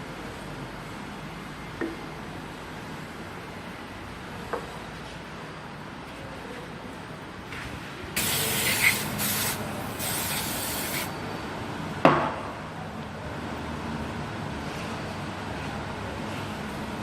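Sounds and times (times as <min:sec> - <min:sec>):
hissing spray bursts: 0:08.2 - 0:11.1.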